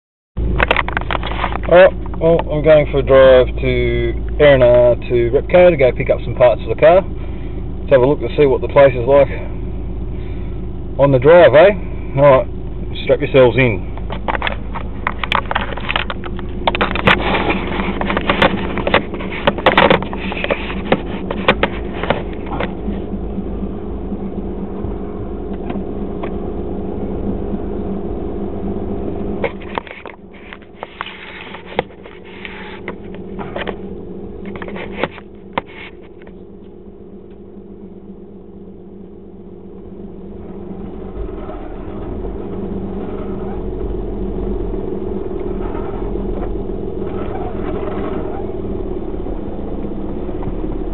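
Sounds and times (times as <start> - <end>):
car engine and road noise: 0.4 - 50.9
knocks and rattles: 14.0 - 22.8.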